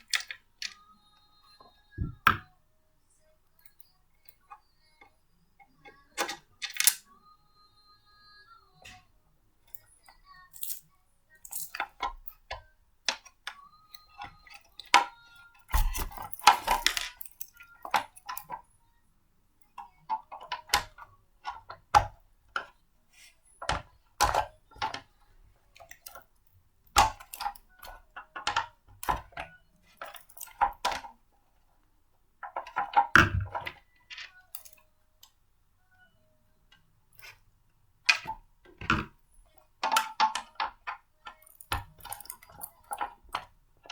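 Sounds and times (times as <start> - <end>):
blender parts clicking and clattering: 6.2 - 7.0.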